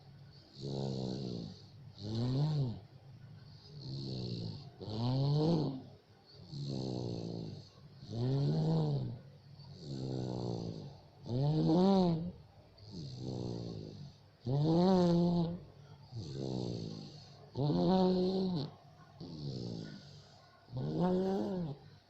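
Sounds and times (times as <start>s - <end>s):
person snoring: 0.5s - 2.8s, 6.5s - 9.2s, 9.8s - 15.6s, 16.2s - 20.1s.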